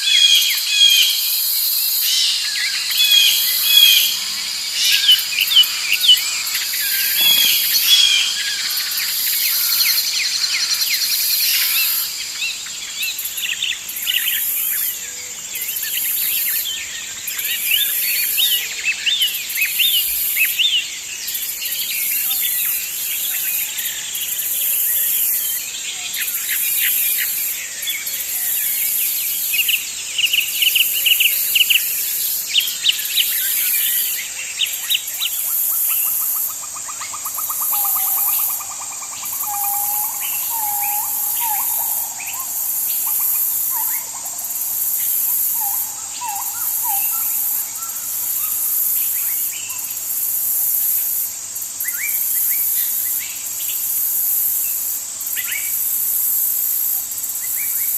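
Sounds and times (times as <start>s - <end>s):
high-pitched insect drone: 0.0s - 57.9s
low trilling call: 2.0s - 9.0s, 37.2s - 48.6s
birds chirping and singing: 2.0s - 12.0s, 36.7s - 49.8s.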